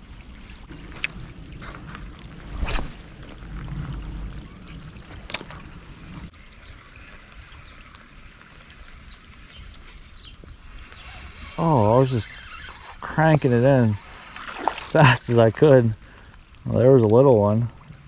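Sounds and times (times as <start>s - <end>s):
low rumble: 0.6s - 6.3s.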